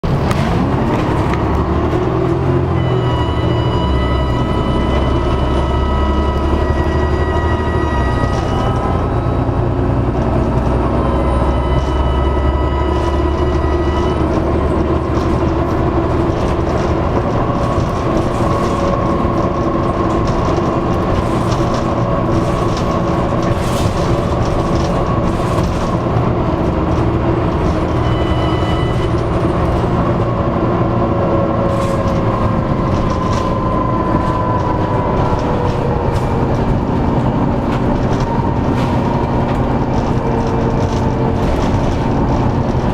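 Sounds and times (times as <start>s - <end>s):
bus diesel engine running: 0.0s - 42.9s
high turbocharger whine: 0.1s - 42.9s
rattles: 6.8s - 42.9s.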